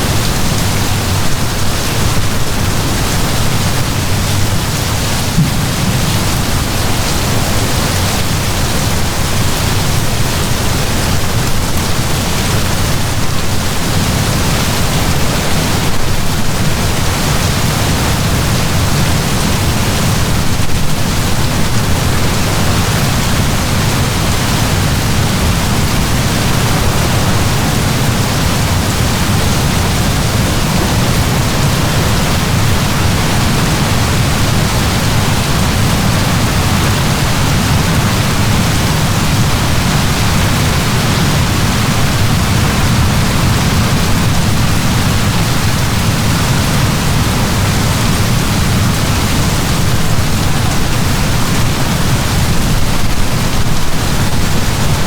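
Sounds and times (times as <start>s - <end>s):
heavy rain downpour: 0.0s - 55.0s
deep low rumble: 5.2s - 7.5s.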